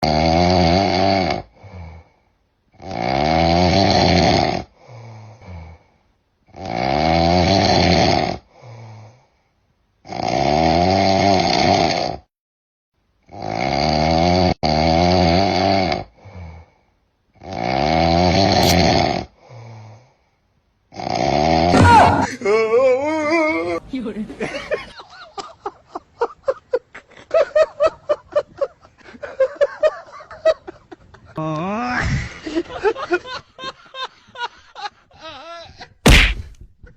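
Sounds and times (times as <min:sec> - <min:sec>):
person snoring loudly: 0:00.0 - 0:02.0, 0:02.8 - 0:05.8, 0:06.5 - 0:09.0, 0:10.0 - 0:12.3, 0:13.3 - 0:16.6, 0:17.4 - 0:19.9, 0:20.9 - 0:22.3.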